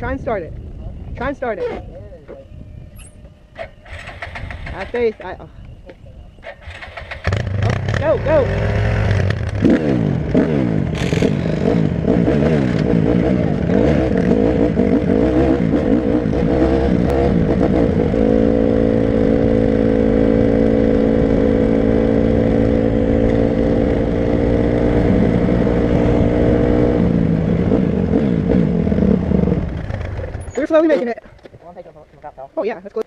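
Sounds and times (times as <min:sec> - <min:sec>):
quad bike engine running: 0:03.7 - 0:05.3, 0:06.5 - 0:31.0.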